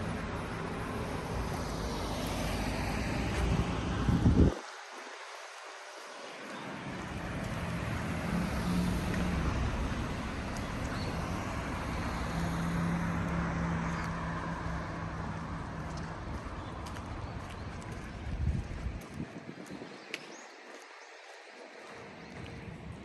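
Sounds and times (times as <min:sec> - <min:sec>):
passing vehicle rumble: 0:00.0 - 0:04.8, 0:06.8 - 0:19.0.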